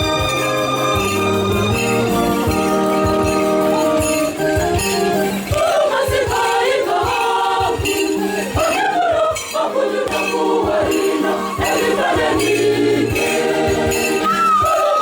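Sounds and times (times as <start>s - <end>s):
steady low beat: 0.0s - 8.0s
choir singing: 0.0s - 15.0s.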